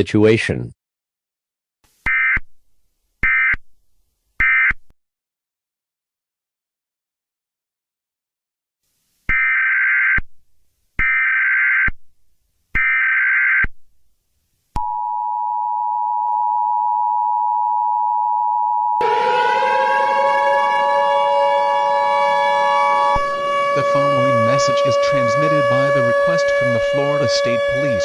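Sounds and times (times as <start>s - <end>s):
siren-like tone: 14.8s - 28.0s.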